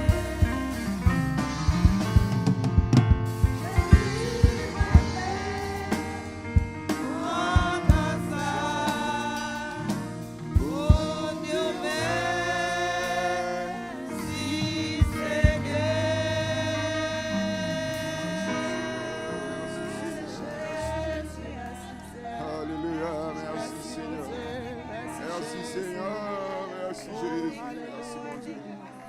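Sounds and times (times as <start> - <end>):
gospel singing: 0.0 - 2.6, 3.4 - 29.0
drum hits: 0.0 - 9.3, 9.9 - 11.5
instrumental accompaniment: 0.0 - 26.3.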